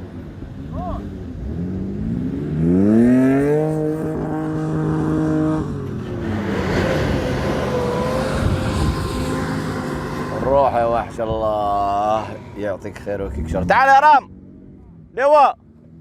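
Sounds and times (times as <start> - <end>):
engine revving hard: 1.4 - 10.8.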